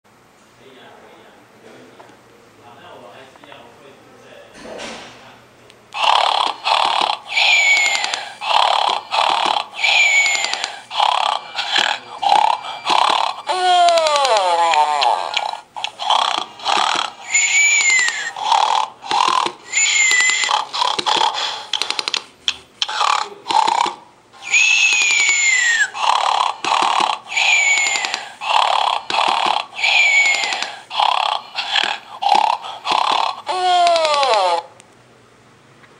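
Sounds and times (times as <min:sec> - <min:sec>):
toy recorded snoring: 0:06.0 - 0:22.2, 0:22.8 - 0:34.7.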